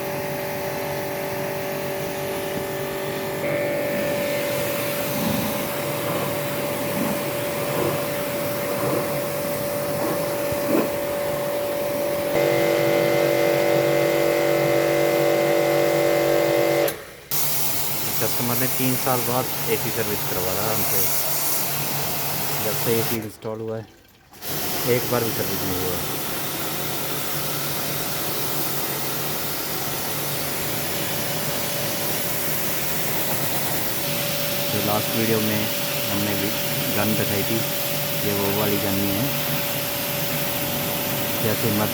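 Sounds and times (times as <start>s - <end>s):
louder steady tones: 0.0s - 17.0s
machine motor humming: 0.0s - 17.1s, 29.2s - 41.9s
pressure washer jet spraying water: 0.0s - 23.3s, 24.4s - 41.9s.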